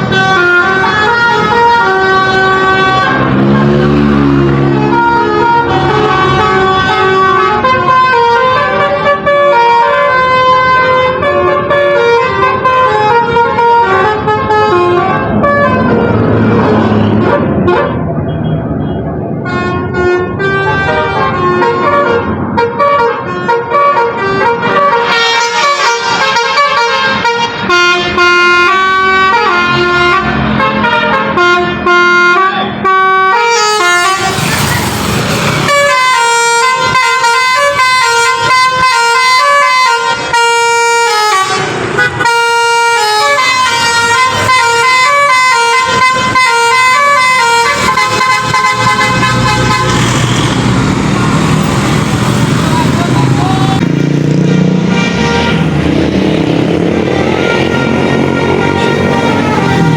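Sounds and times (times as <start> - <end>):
multi-tone bus horn tune: 0.0 - 59.9
brief rushing sweeps: 34.1 - 35.9.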